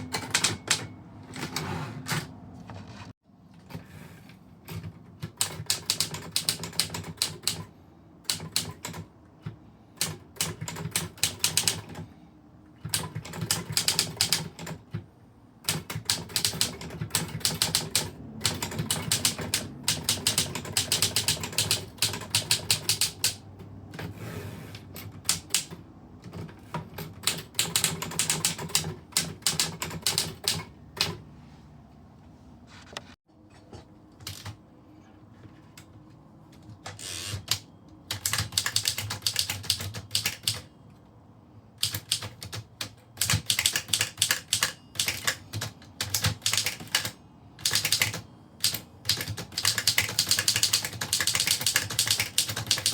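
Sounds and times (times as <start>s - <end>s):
typewriter key strikes: 43.2s - 52.9s.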